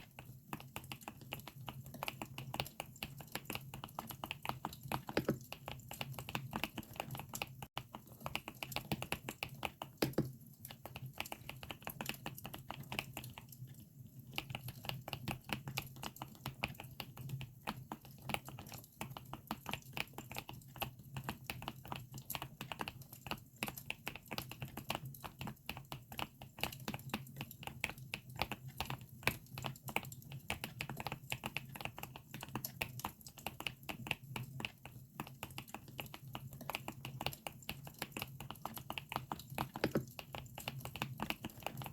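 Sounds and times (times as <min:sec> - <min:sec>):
mechanical keyboard typing: 0:04.8 - 0:07.5, 0:08.6 - 0:10.4, 0:36.6 - 0:41.9.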